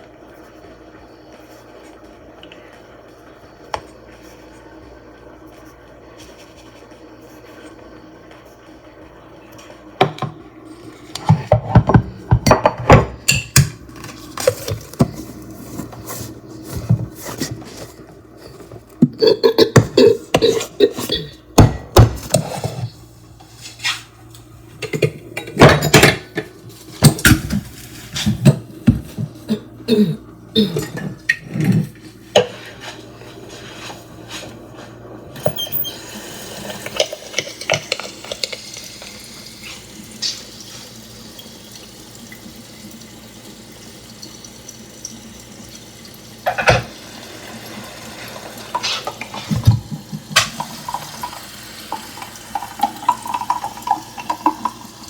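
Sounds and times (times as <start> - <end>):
tap running: 10.0 - 10.4, 11.1 - 20.6, 35.4 - 43.0, 45.0 - 55.0
pots and dishes clattering: 11.2 - 23.0, 24.8 - 33.0, 36.6 - 39.1, 46.4 - 47.0, 48.6 - 54.8.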